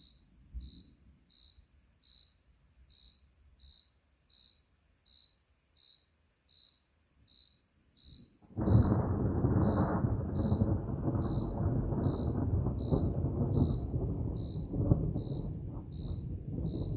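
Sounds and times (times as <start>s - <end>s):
cricket chirping: 0.0s - 16.9s
thunder rumbling: 8.4s - 16.9s.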